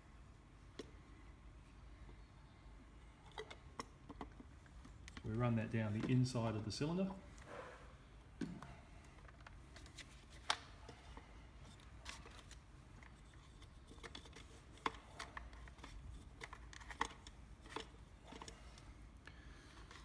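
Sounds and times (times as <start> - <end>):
small clicks and taps of tool parts: 3.3 - 5.4, 8.4 - 20.0.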